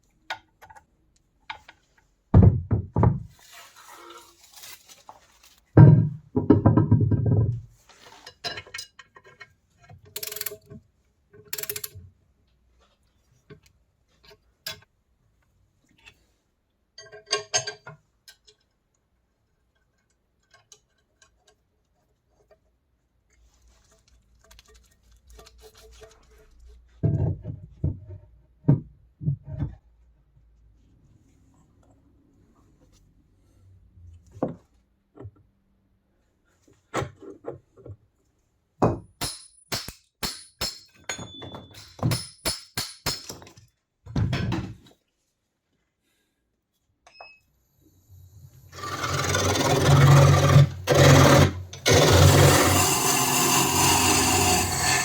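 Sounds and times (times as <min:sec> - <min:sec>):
metal parts clinking: 0:10.2 - 0:10.6, 0:11.5 - 0:12.0.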